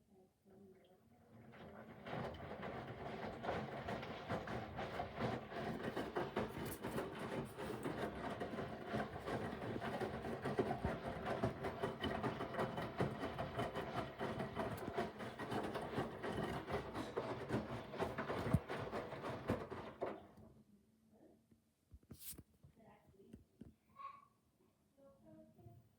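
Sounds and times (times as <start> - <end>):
washing machine rumbling: 1.3 - 20.4.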